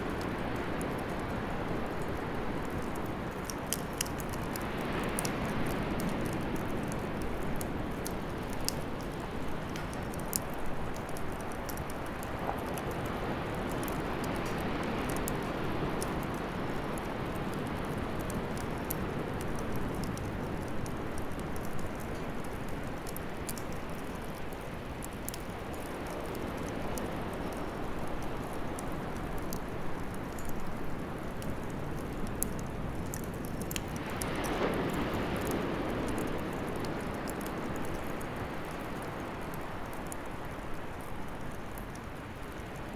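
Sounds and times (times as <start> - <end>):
wood fire crackling: 0.0 - 42.9.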